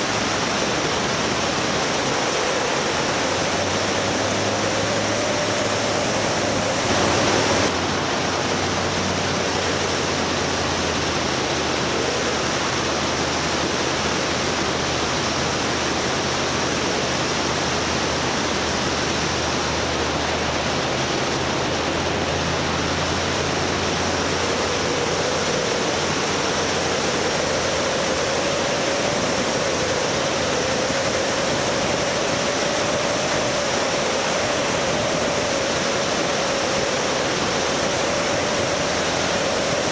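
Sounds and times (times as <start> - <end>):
vehicle rushing noise: 0.0 - 11.0
faint whine: 0.0 - 39.9
low engine hum: 0.0 - 39.9.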